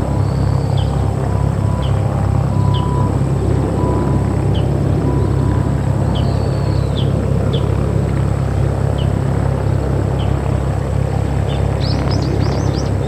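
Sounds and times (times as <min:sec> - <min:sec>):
small birds chirping: 0:00.0 - 0:01.1, 0:01.7 - 0:03.1, 0:04.4 - 0:05.4, 0:06.0 - 0:07.8, 0:08.9 - 0:09.2, 0:10.1 - 0:10.4, 0:11.4 - 0:13.0
propeller aircraft engine rumble: 0:00.0 - 0:13.0.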